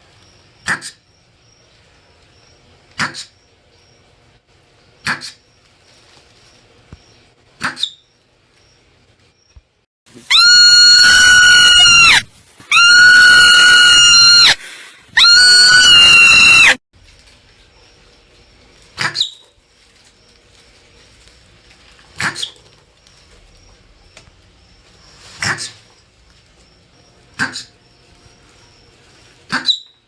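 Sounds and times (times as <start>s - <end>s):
marmot screaming: 10.2s - 16.8s.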